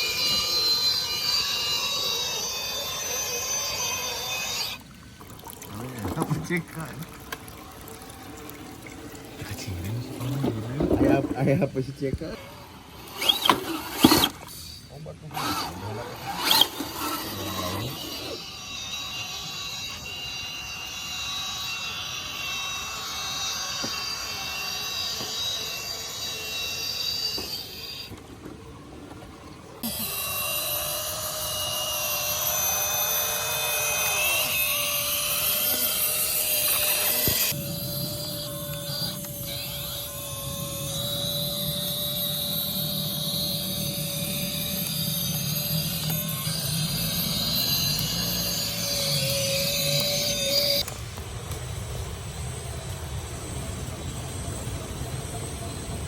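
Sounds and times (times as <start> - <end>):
rc truck motor whining: 0.0 - 56.0.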